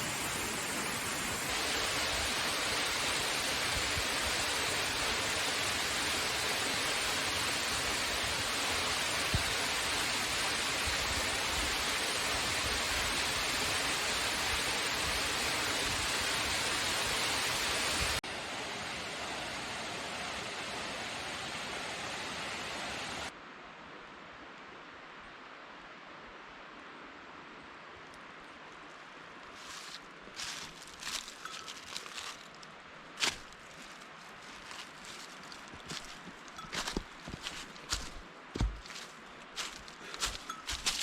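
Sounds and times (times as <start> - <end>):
waterfall rushing: 0.0 - 23.3.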